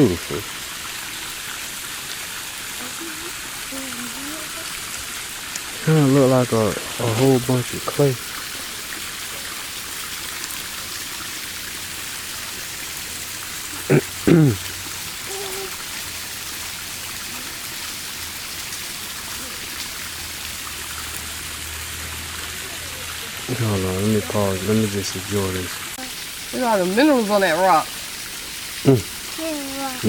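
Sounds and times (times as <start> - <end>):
creek water running: 0.0 - 30.0
person making vocal sounds: 2.8 - 4.8, 13.7 - 15.8, 28.9 - 30.0.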